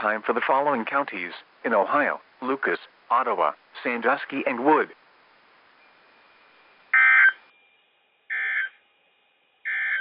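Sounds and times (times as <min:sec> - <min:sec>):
digital data squawks: 0:07.0 - 0:07.4, 0:08.3 - 0:08.8, 0:09.7 - 0:10.0.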